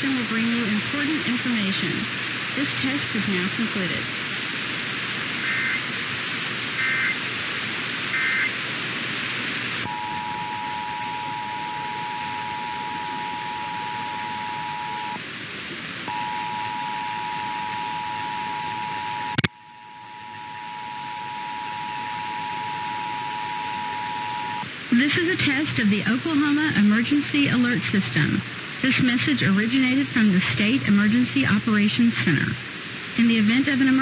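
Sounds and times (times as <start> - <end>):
radio static: 0.0 - 34.0
digital data bursts: 5.4 - 5.9, 6.8 - 7.2, 8.1 - 8.6
two-tone attention signal: 9.9 - 15.2, 16.1 - 24.6.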